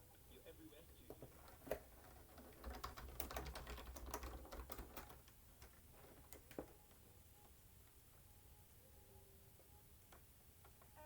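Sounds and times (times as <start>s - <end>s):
typing on computer keyboard: 1.2s - 6.8s.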